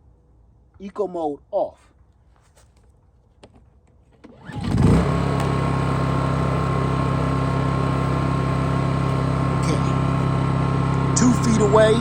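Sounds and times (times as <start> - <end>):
generator starting and running: 4.1 - 12.0.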